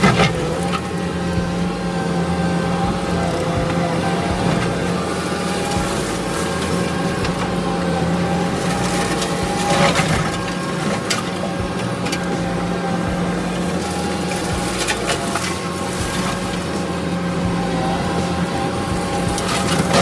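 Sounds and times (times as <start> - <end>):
brush cutter chewing brush: 0.0 - 20.0
diesel engine running: 0.0 - 20.0
wood cracking: 0.0 - 20.0.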